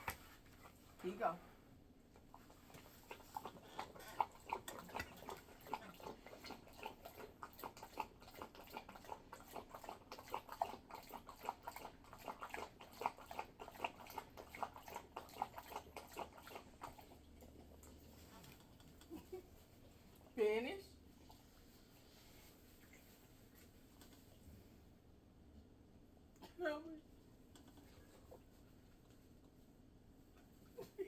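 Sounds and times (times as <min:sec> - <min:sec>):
dog lapping water: 0:02.2 - 0:20.2.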